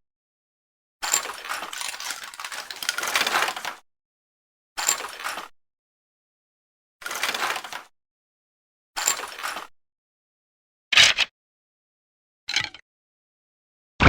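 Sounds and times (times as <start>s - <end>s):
dry bone rattles: 1.1s - 3.7s.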